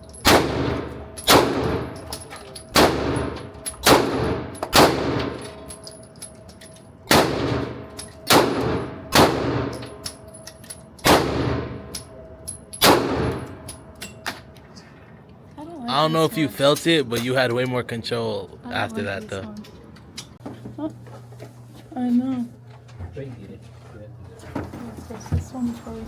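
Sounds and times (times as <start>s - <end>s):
faint gunshots from other lanes: 0.2s - 2.0s, 2.8s - 5.4s, 7.1s - 9.8s, 11.0s - 11.9s, 12.8s - 13.7s
pistol shots echoing indoors: 0.2s - 2.0s, 2.7s - 5.6s, 7.1s - 10.2s, 11.0s - 12.1s, 12.7s - 13.9s.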